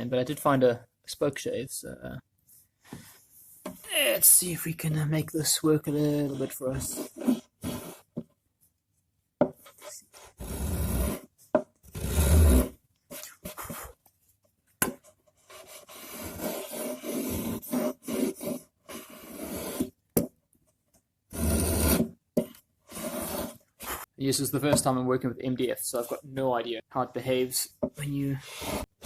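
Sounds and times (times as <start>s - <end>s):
spokeshave scraping wood: 22.9s - 24.1s.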